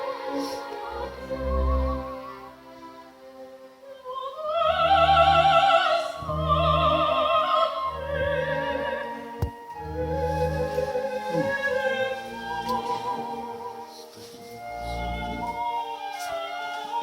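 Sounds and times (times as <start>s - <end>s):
operatic singing: 3.8s - 14.1s
orchestra low chords: 4.7s - 15.7s.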